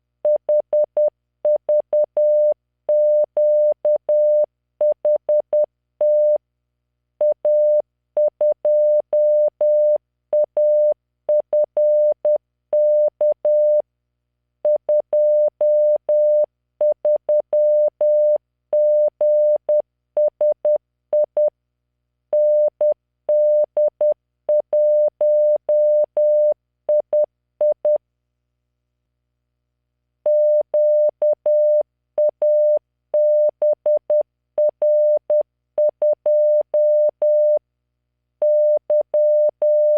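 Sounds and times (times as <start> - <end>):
morse code beeps: 30.3 - 37.6, 38.4 - 39.9.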